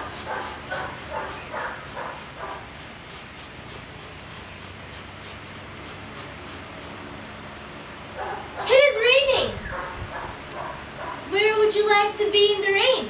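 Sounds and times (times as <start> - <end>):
dog barking: 0.0 - 2.7, 8.2 - 8.7, 9.7 - 11.3
background hiss: 0.0 - 13.0.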